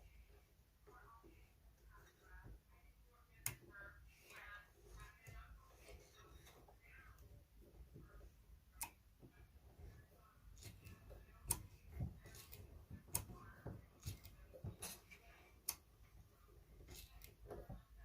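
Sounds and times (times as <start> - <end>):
sharp clicks and taps of hand work: 10.6 - 15.9.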